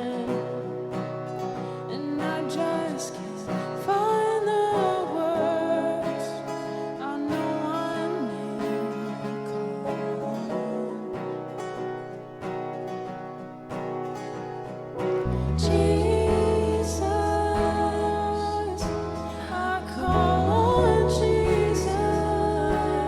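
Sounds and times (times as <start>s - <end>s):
person singing: 1.9s - 11.5s, 15.3s - 23.0s
worship band playing: 15.5s - 23.0s.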